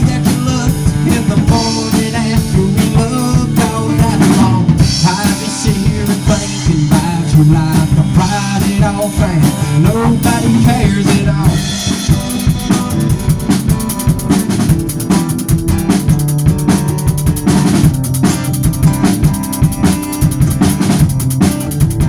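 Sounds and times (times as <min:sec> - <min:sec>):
bass: 0:00.0 - 0:22.0
drum kit beat: 0:00.0 - 0:22.0
held pitched notes: 0:11.4 - 0:22.0.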